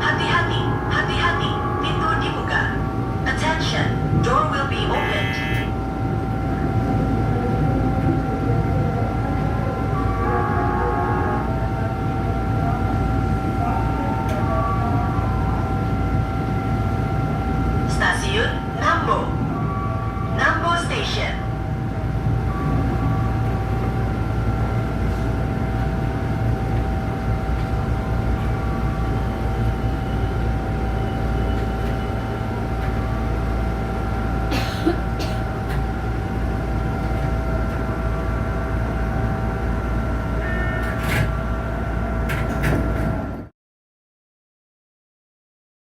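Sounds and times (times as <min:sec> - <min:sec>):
electric train humming: 0:00.0 - 0:43.5
low rumble: 0:21.6 - 0:33.8.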